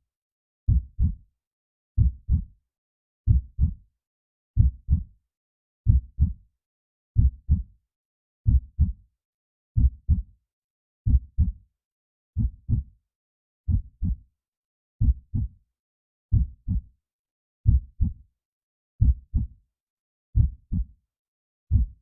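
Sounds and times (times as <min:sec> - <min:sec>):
heartbeat thumps: 0:00.7 - 0:01.1, 0:02.0 - 0:02.4, 0:04.6 - 0:05.0, 0:09.8 - 0:10.2, 0:20.4 - 0:20.8, 0:21.7 - 0:22.0.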